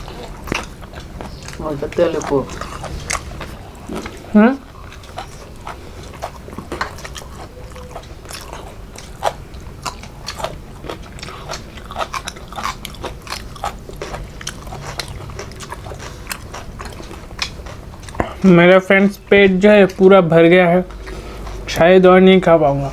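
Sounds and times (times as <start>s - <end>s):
person chewing crunchy food: 0.0s - 20.1s, 20.7s - 22.0s.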